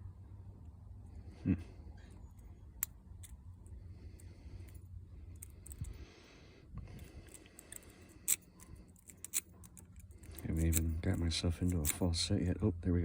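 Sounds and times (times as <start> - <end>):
low steady hum: 0.0 - 13.0
lock pick clicking on pins: 5.3 - 6.0, 7.1 - 12.1.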